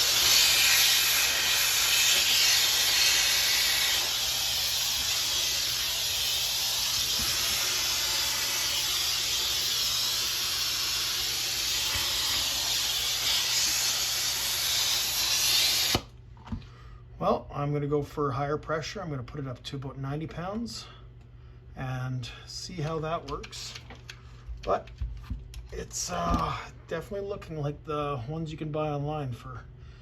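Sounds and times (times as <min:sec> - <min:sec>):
compressed air hissing from nozzle: 0:00.0 - 0:16.1.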